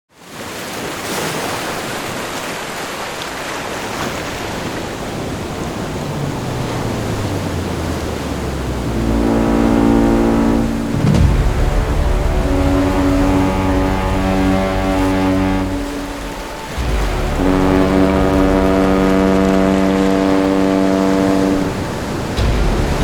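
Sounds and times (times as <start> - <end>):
waves and rushing water: 0.1 - 23.0
deep steady drone: 5.7 - 23.0
deep horn-like tone: 6.5 - 23.0.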